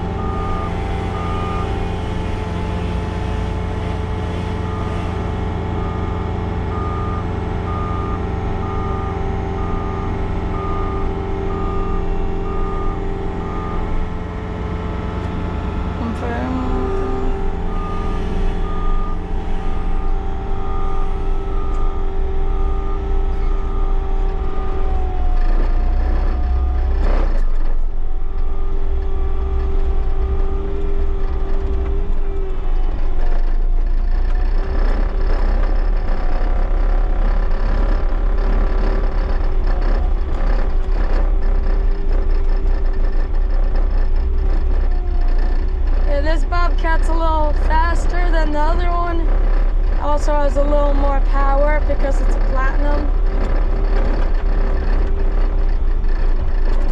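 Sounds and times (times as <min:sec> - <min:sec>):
backup alarm beeping: 0:00.0 - 0:25.2
diesel engine rumbling: 0:00.0 - 0:56.9
engine whine: 0:00.0 - 0:56.9.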